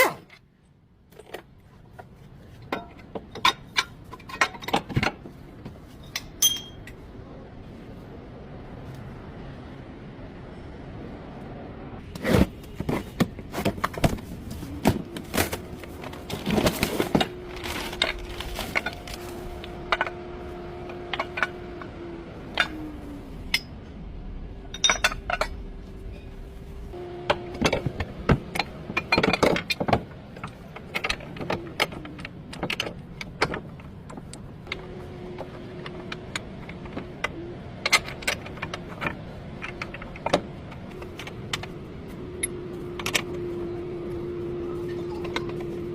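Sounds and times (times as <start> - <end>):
steady low hum: 0.2 - 45.9
metallic clinks and knocks: 6.0 - 7.0, 24.7 - 26.3.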